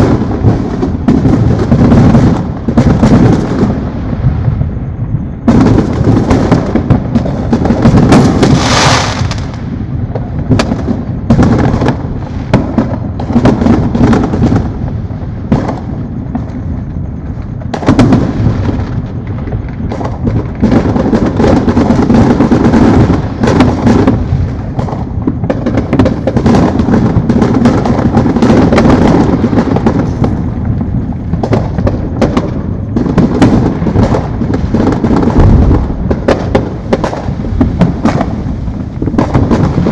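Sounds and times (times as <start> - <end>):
fireworks booming and crackling: 0.0 - 39.9
firework hissing burst: 8.3 - 10.0, 22.4 - 39.9.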